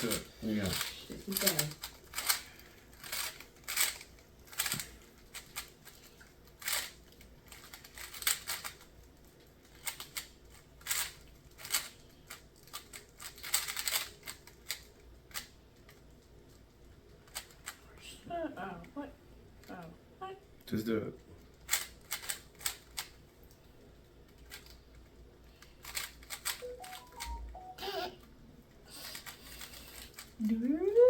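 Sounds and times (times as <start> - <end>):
puzzle cube layers clicking: 25.8 - 27.9.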